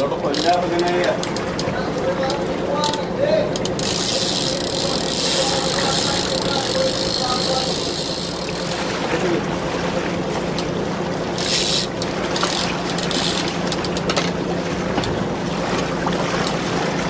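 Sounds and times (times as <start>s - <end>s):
boat engine humming: 0.0s - 17.0s
water noise: 0.0s - 17.0s
wind: 0.0s - 17.0s
faint clicks: 0.3s - 5.3s.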